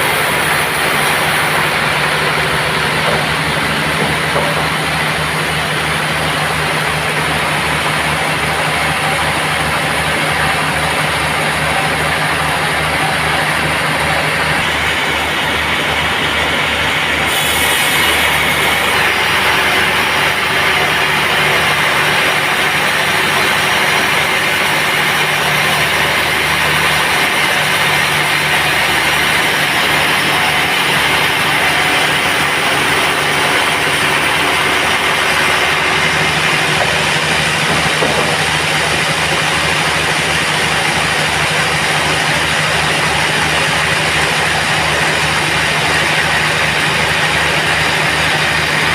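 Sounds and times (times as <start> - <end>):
band sawmill running: 0.0 - 48.9.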